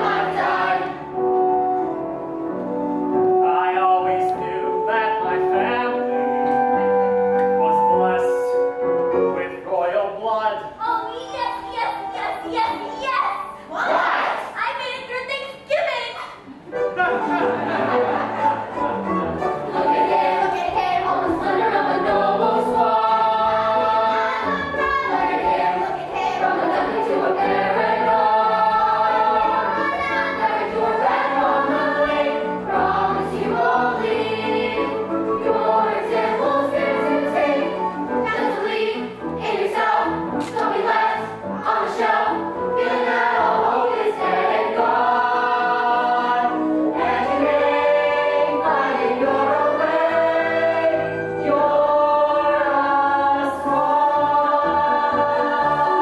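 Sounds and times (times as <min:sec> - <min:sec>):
young cast singing in chorus: 0:00.0 - 0:01.1, 0:19.6 - 0:56.0.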